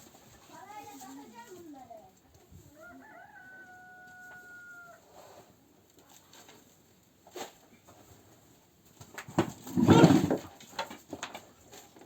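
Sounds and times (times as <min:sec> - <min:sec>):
rooster crowing: 0:02.8 - 0:05.1.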